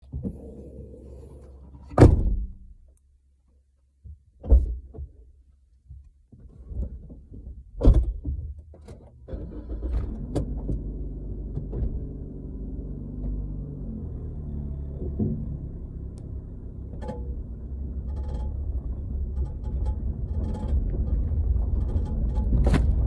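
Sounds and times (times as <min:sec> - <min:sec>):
car doors thudding shut: 0:02.0 - 0:02.5
car engine running: 0:09.8 - 0:23.0.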